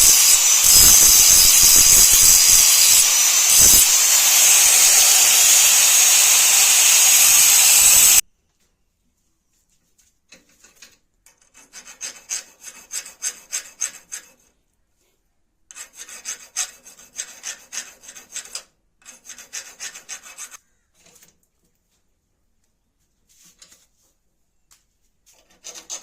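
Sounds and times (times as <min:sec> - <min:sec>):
file scraping on wood: 0:11.4 - 0:14.6, 0:15.7 - 0:20.6.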